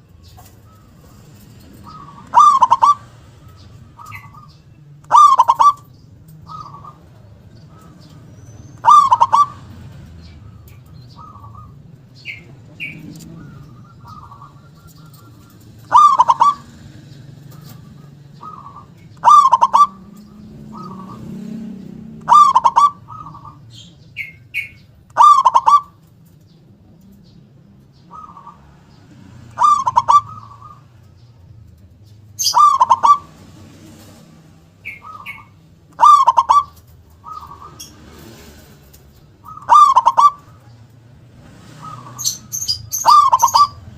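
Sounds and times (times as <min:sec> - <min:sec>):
dove cooing: 0:00.0 - 0:43.9
small birds chirping: 0:00.0 - 0:43.9.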